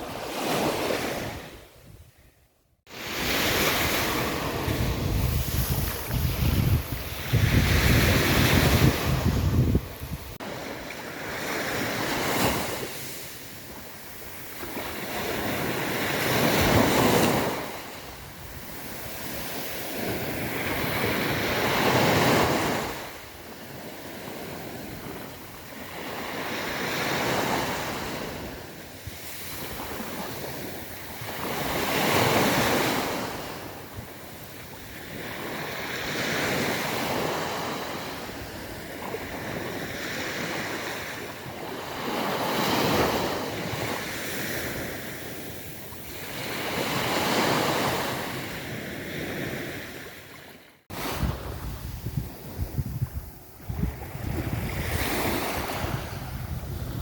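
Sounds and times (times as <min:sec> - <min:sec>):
sea waves breaking on beach: 0:00.0 - 0:01.8, 0:02.9 - 0:57.0
wind buffeting microphone: 0:03.2 - 0:10.5, 0:50.9 - 0:57.0.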